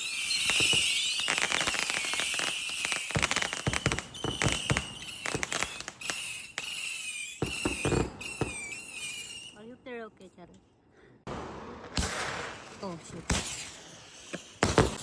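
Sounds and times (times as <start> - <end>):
fireworks crackling pops: 0.0 - 9.6, 11.4 - 15.0
high wavering squeal: 6.1 - 9.6.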